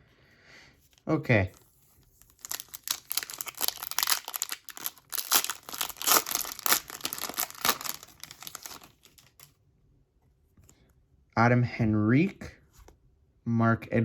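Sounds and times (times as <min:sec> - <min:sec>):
wrapper tearing and crinkling: 0:01.5 - 0:09.5.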